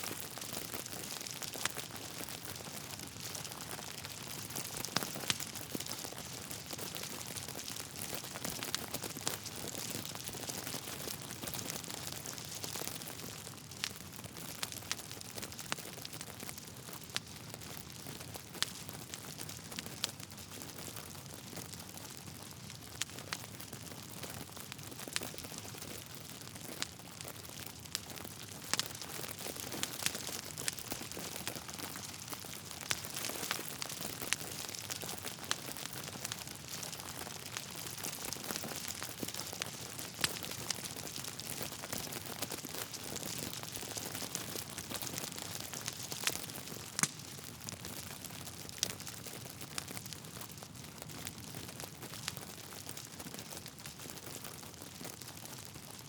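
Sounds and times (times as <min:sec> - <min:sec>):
wood fire crackling: 0:00.0 - 0:56.0
pops and snaps from burning logs: 0:27.9 - 0:52.4.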